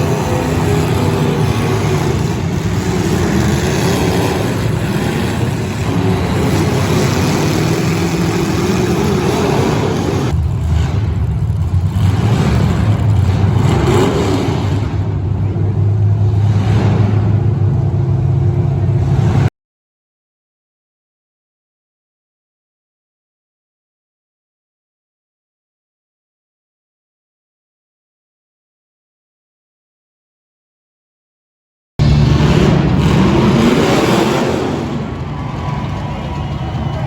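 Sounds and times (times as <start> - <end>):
car engines revving: 0.0 - 19.5, 32.0 - 37.0.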